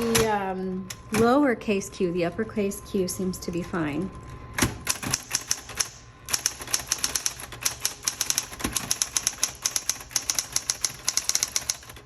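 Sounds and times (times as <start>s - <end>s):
electric typewriter typing clicks: 0.0s - 1.4s, 4.6s - 12.0s.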